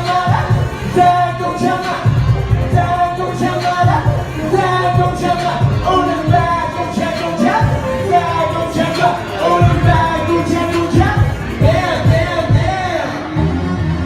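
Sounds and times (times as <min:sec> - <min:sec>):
person singing: 0:00.0 - 0:14.0
pop band playing: 0:00.0 - 0:14.0
kick drum beat: 0:11.0 - 0:12.8.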